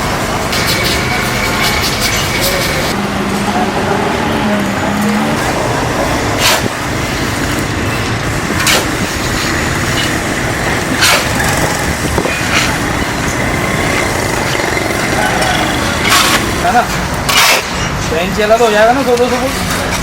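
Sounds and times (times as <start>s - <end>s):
loud machinery noise: 0.0s - 20.0s.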